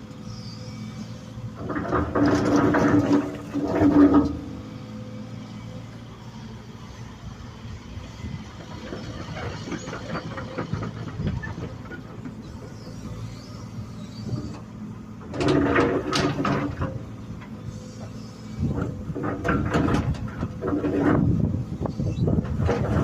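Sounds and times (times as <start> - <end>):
excavator diesel engine running: 0.0 - 23.0
scraping and clatter of digging: 1.2 - 5.0, 8.4 - 23.0.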